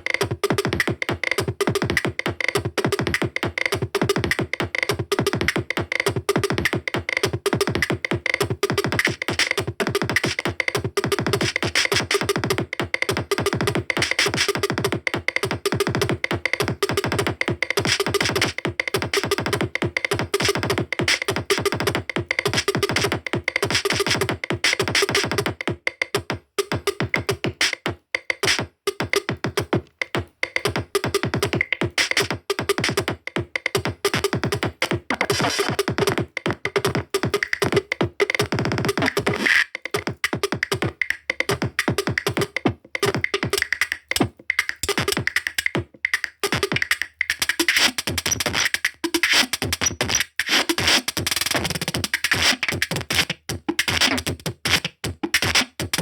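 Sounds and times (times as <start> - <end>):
electronic music with drum-machine beat: 0.0 - 56.0.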